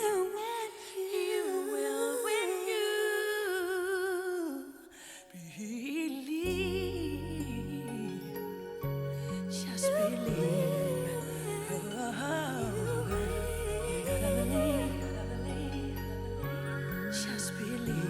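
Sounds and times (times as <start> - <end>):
person singing a ballad: 0.0 - 18.0
low musical accompaniment: 6.5 - 18.0.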